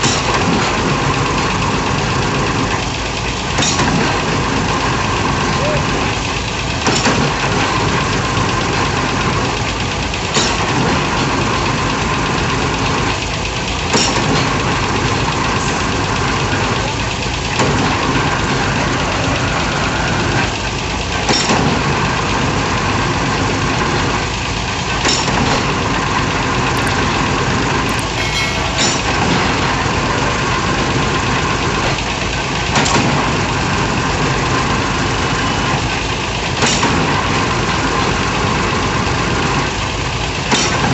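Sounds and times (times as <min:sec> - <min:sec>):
piling rig engine running: 0:22.0 - 0:36.5
short sharp clank: 0:25.1 - 0:25.9, 0:26.8 - 0:27.2, 0:27.9 - 0:29.8.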